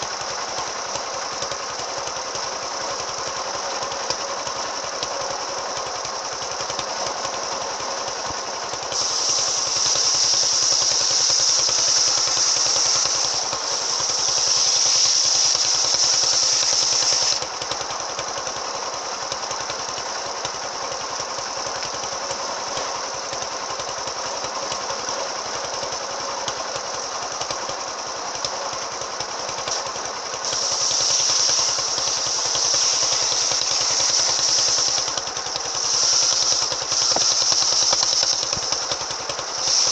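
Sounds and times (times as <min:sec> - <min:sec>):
engine-driven circular saw running: 0:00.0 - 0:39.9
saw blade cutting wood: 0:06.6 - 0:17.6, 0:29.5 - 0:39.9.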